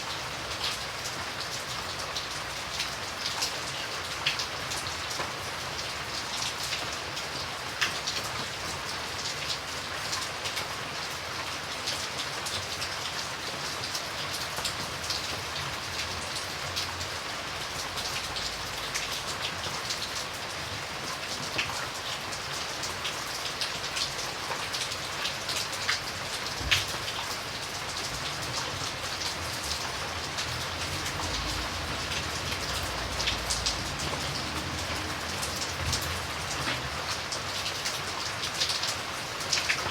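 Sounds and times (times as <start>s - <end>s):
steady rain falling: 0.0s - 39.9s
raindrop ticks: 25.5s - 39.9s.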